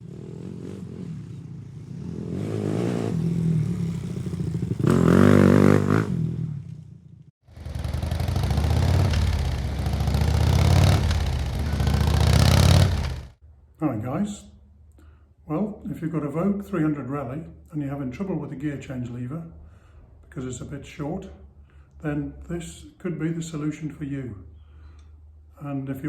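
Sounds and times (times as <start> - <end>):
engine revving: 0.0 - 6.6, 7.5 - 13.4
motorcycle engine running: 0.0 - 13.4.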